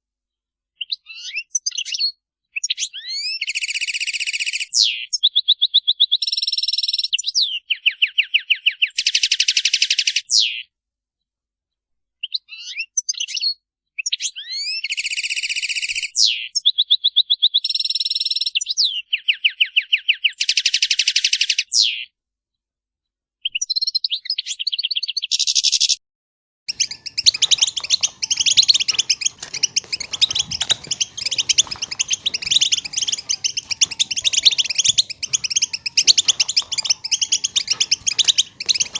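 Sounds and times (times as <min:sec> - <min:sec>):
goldfinches twittering: 0:26.7 - 0:38.9.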